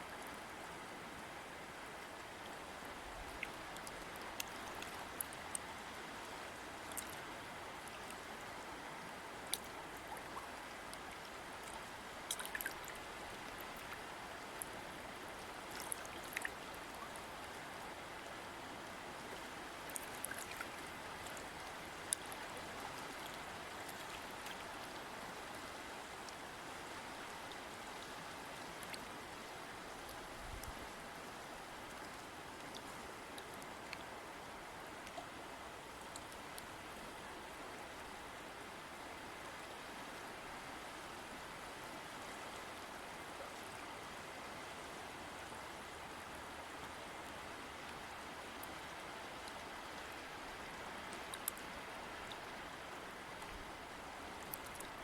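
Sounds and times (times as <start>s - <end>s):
stream flowing over rocks: 0.0s - 55.0s
small water splashes: 9.4s - 14.8s, 15.6s - 17.1s, 19.8s - 24.9s.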